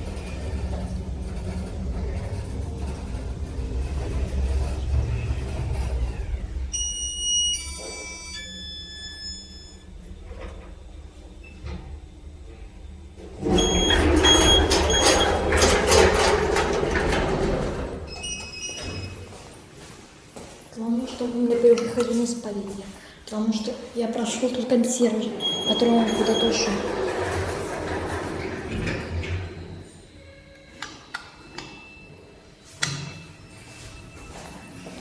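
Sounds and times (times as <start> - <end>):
sliding doors clattering: 0.0 - 8.6, 9.2 - 19.4, 24.9 - 30.0
lift running with low rumble: 0.0 - 18.4, 24.5 - 30.4.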